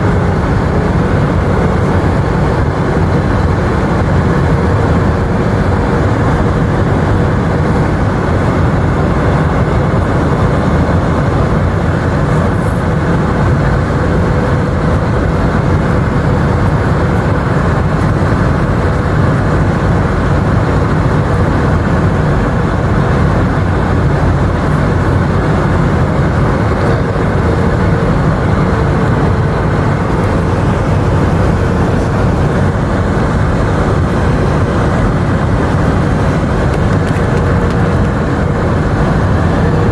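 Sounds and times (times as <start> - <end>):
air rushing past fuselage: 0.0 - 39.9
faint steady whine: 0.0 - 39.9
jet engines running: 0.0 - 39.9.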